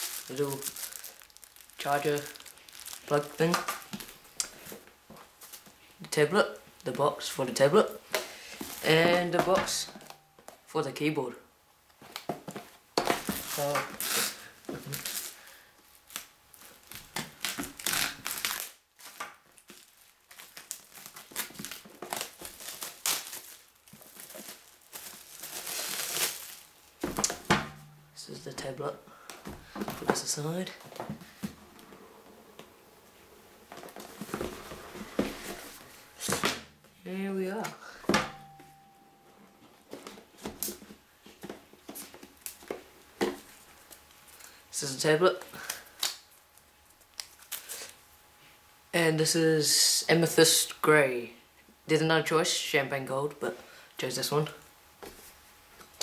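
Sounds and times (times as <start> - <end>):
packaging crinkling: 0.0 - 4.7, 13.2 - 27.4.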